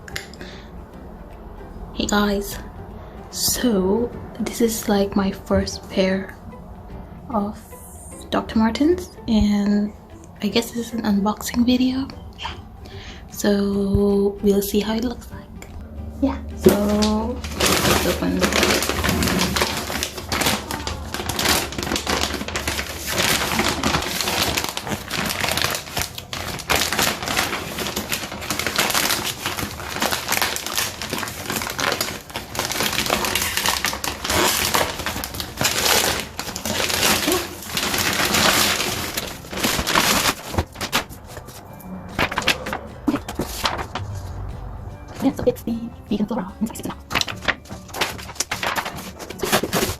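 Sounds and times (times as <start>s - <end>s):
paper and cardboard crinkling: 16.6s - 44.5s, 46.4s - 49.9s.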